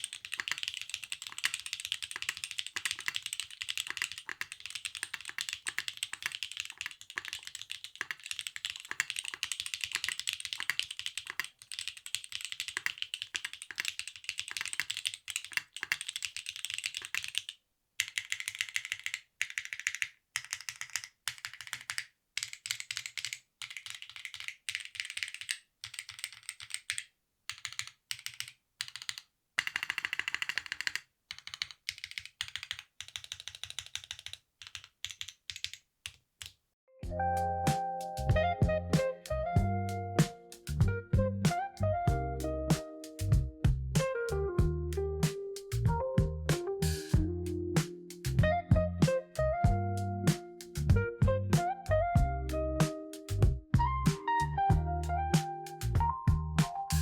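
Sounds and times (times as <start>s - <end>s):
fast typing on mechanical keyboard: 0.0s - 36.6s.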